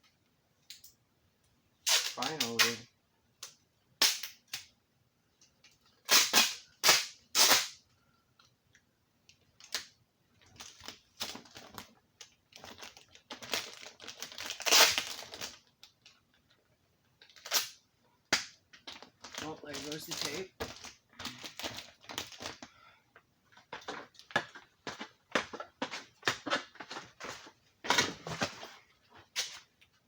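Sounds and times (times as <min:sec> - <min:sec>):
adhesive tape ripping off roll: 0:01.8 - 0:02.8, 0:04.0 - 0:04.7, 0:06.1 - 0:07.8, 0:14.1 - 0:15.6, 0:17.4 - 0:18.6
tape and plastic crackling: 0:01.8 - 0:02.8, 0:05.3 - 0:22.8, 0:23.4 - 0:30.0.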